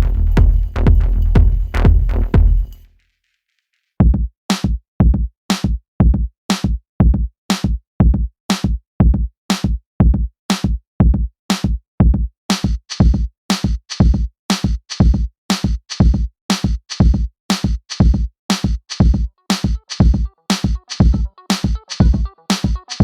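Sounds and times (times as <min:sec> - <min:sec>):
electronic music with drum-machine beat: 0:00.0 - 0:02.8, 0:17.9 - 0:23.0.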